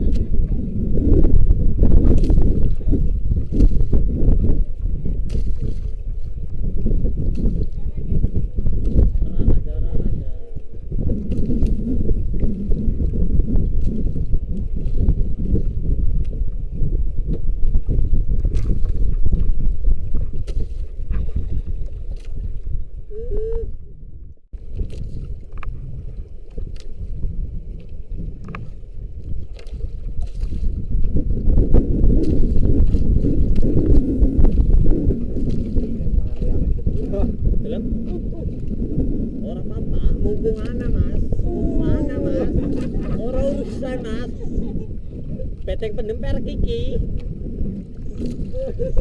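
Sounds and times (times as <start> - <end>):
wind buffeting microphone: 0.0 - 49.0
water sloshing around boat: 2.2 - 11.8, 17.1 - 23.0, 24.6 - 31.2, 40.3 - 45.8.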